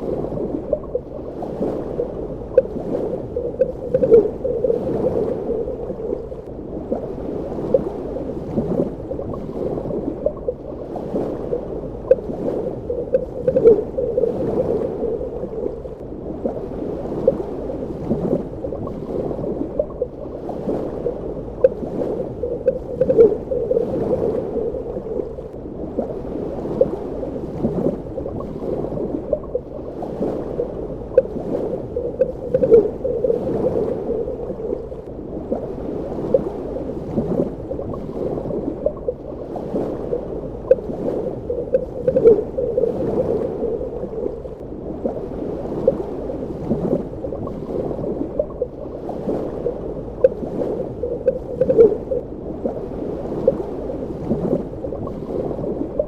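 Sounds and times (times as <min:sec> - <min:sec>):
muffled underwater water wash: 0:00.0 - 0:56.0
gurgling bubbles popping: 0:02.5 - 0:06.3, 0:12.1 - 0:15.9, 0:21.6 - 0:25.3, 0:32.0 - 0:34.8.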